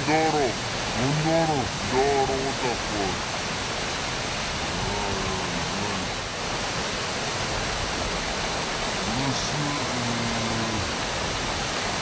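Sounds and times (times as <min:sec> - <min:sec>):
waterfall rushing: 0:00.0 - 0:12.0
faint voice: 0:04.7 - 0:06.1.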